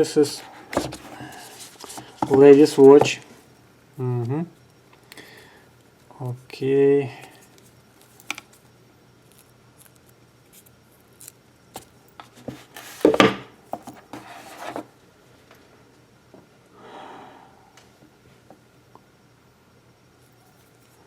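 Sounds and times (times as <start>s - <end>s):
scraping rustle: 13.8s - 14.9s.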